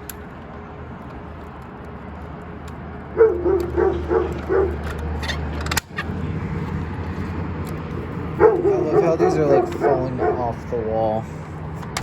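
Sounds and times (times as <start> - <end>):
dog barking: 3.2 - 4.8, 8.4 - 10.7.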